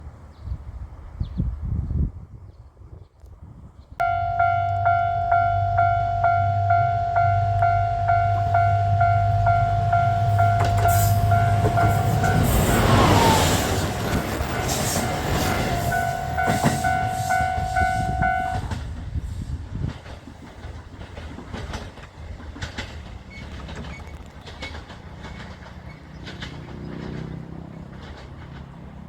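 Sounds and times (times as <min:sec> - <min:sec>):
crossing warning bell: 0:04.0 - 0:18.8
train wheels clacking on rails: 0:07.2 - 0:29.0.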